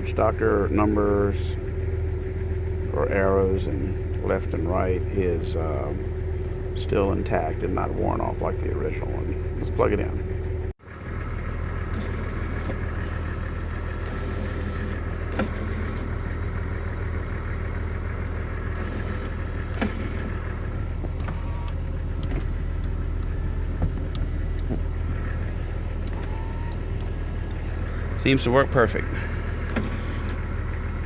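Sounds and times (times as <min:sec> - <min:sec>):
low hum: 0:00.0 - 0:31.0
power window motor whining: 0:08.8 - 0:31.0
switch clicks: 0:18.7 - 0:27.9, 0:29.6 - 0:30.4.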